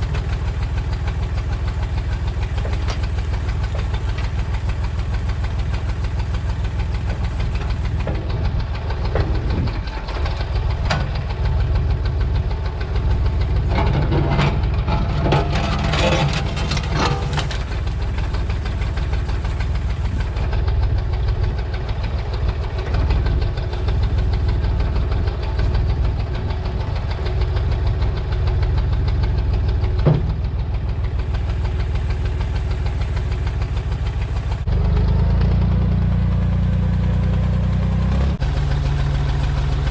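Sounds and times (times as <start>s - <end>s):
tractor engine running: 0.0s - 39.9s
cracking and clattering: 13.0s - 18.9s.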